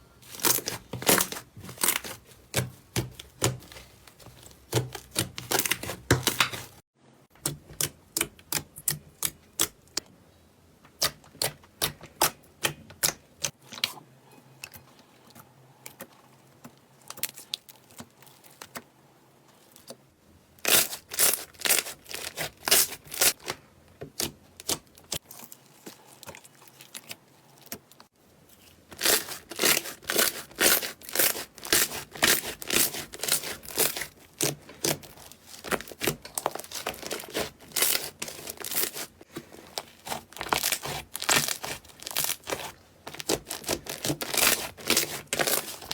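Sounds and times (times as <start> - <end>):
slime crackling and popping: 39.7 - 45.9.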